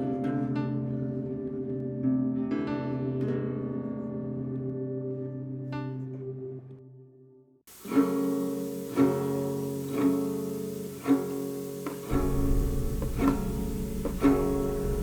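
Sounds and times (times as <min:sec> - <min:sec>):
plucked guitar chords: 0:07.8 - 0:15.0
deep bass: 0:12.1 - 0:15.0.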